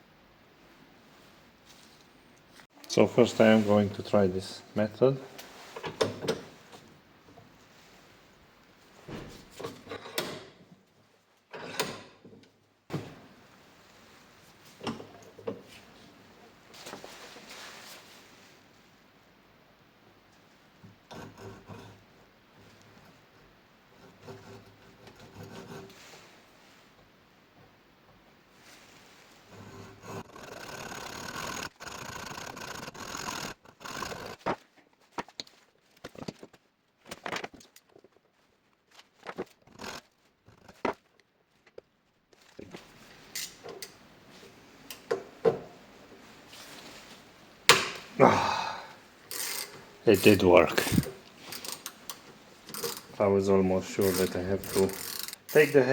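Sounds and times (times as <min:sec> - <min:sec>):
tool rubbing and creaking on bolt: 0:21.1 - 0:22.1, 0:23.9 - 0:26.1, 0:29.5 - 0:34.7, 0:38.9 - 0:41.1, 0:42.4 - 0:44.0, 0:49.3 - 0:55.9
hand tools clicking on metal: 0:49.3 - 0:49.8, 0:51.0 - 0:53.2, 0:54.0 - 0:55.8.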